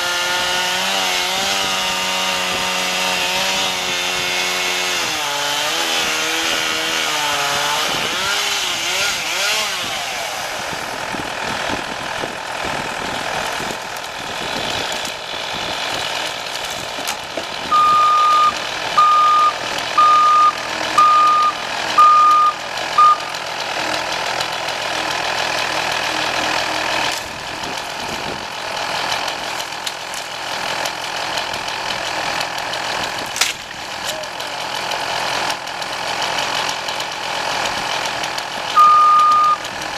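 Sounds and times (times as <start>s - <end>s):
chainsaw winding down: 0.0s - 39.9s
engine running: 0.0s - 39.9s
vehicle backup alarm beeping: 17.7s - 23.4s, 38.8s - 39.6s.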